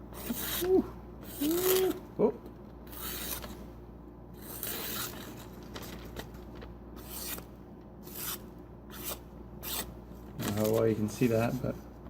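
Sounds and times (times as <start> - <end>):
blade slicing through newspaper: 0.1 - 2.0, 2.9 - 3.6, 4.4 - 6.4, 7.0 - 11.5.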